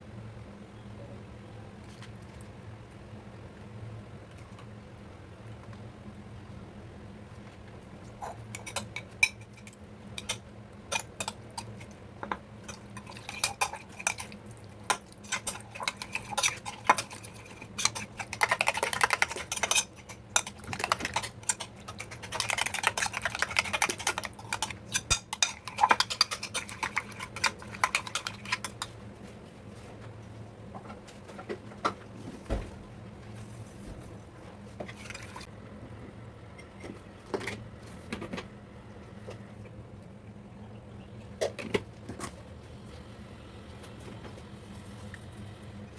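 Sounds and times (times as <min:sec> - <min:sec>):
metal spoon clinking on dish: 0:12.7 - 0:28.8.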